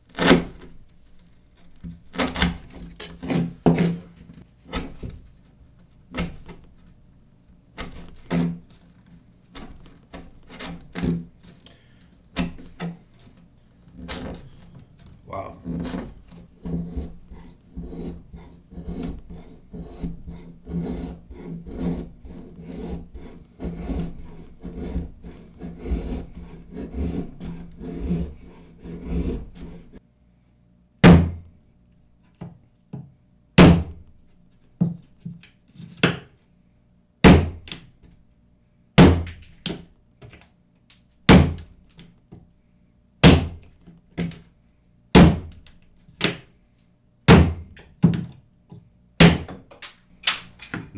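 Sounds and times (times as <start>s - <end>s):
knife cutting wood: 0.1s - 0.8s, 1.6s - 5.2s, 6.1s - 6.9s, 7.8s - 13.4s, 14.0s - 30.0s
knife chopping into wood: 1.8s - 4.0s, 4.7s - 5.2s, 6.1s - 6.6s, 7.8s - 8.7s, 12.3s - 13.0s, 31.0s - 31.4s, 33.6s - 34.0s, 37.2s - 37.8s, 39.0s - 40.4s, 41.3s - 41.7s, 43.2s - 44.4s, 45.2s - 46.5s, 47.3s - 48.3s, 49.2s - 49.6s.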